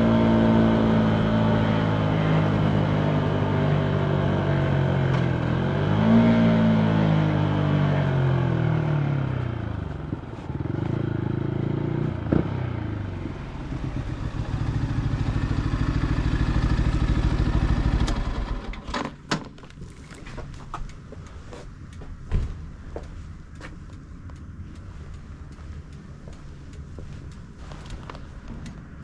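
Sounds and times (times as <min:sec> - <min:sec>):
motorcycle engine idling: 0:09.6 - 0:18.8.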